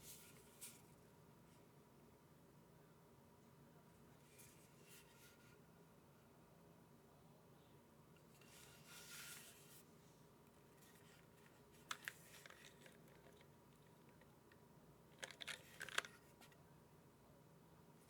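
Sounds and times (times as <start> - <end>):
soft rustle: 0.0 - 1.7, 4.0 - 5.6, 8.2 - 13.4.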